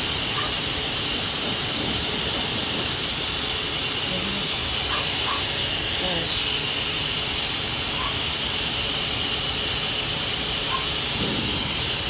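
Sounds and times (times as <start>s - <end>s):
pet blow dryer running: 0.0s - 12.0s.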